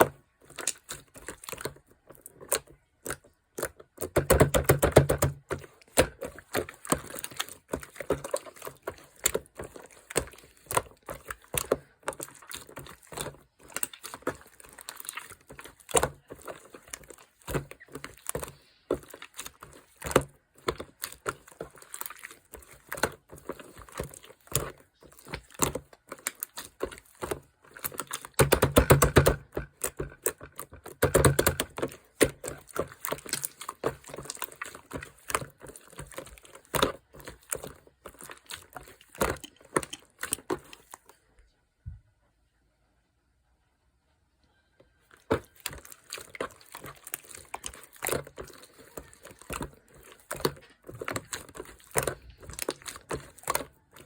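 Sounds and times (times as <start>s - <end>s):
slime squishing with sticky clicks: 0.0s - 41.2s, 44.8s - 54.0s.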